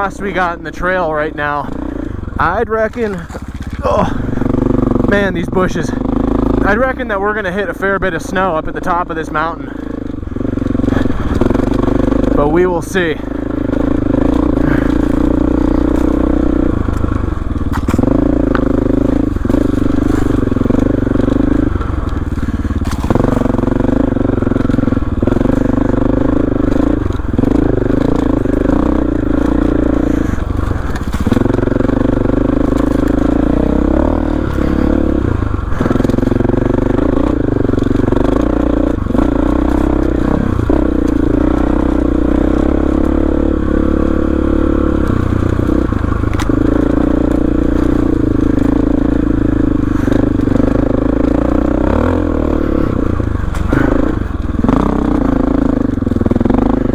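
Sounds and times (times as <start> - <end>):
dirt bike engine under load: 0.0 - 56.9
wheels crunching brush and rocks: 0.0 - 56.9.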